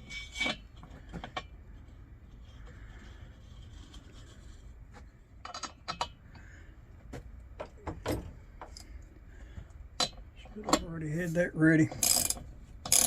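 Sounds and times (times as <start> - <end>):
low steady hum: 0.0 - 13.0
small metal parts clicking: 11.9 - 13.0.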